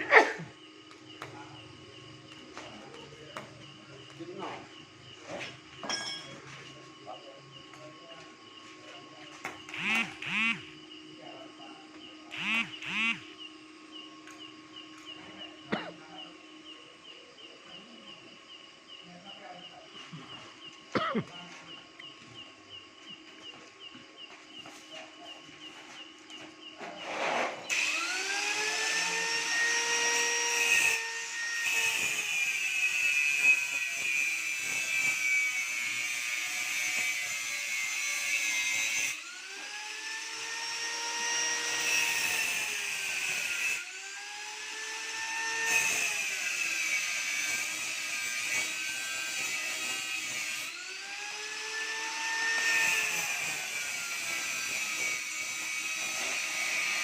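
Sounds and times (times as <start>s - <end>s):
electric motor whining: 9.7s - 10.8s, 12.3s - 13.4s, 27.7s - 33.9s.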